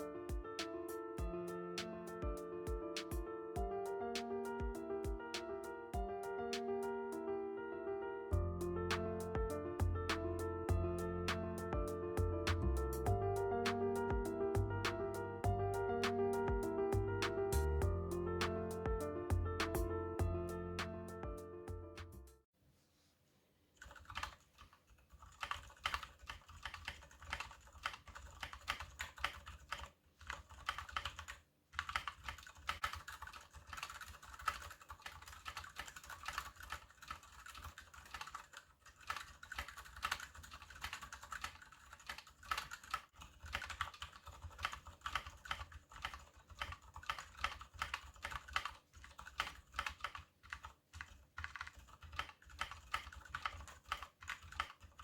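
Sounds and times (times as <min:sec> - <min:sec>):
fast typing on mechanical keyboard: 0:23.8 - 0:55.0.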